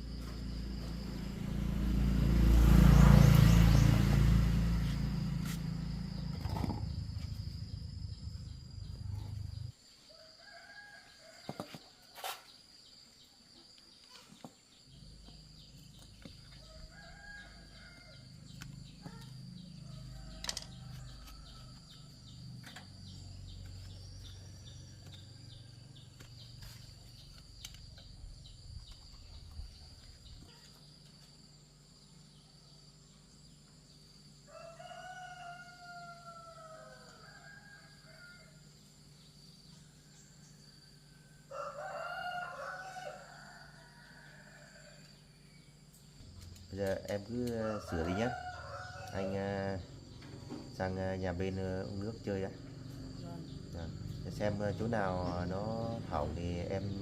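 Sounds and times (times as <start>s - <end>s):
low engine rumble: 0.0s - 9.7s.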